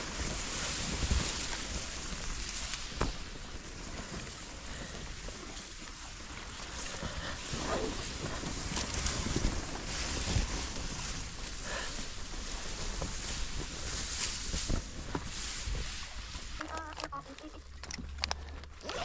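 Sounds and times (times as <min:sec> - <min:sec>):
paddle splashes: 0:00.0 - 0:17.0
water splashing and gurgling: 0:00.0 - 0:19.0.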